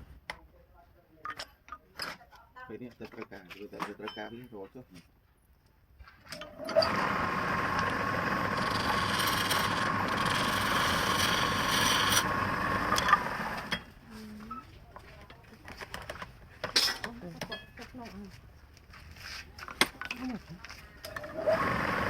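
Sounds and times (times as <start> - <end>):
lathe grinding whir: 6.4 - 13.9, 21.0 - 22.0.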